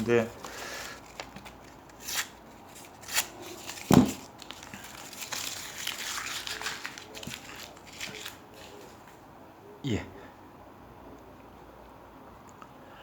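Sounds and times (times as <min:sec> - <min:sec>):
crinkling rustling handling: 0:00.0 - 0:09.1.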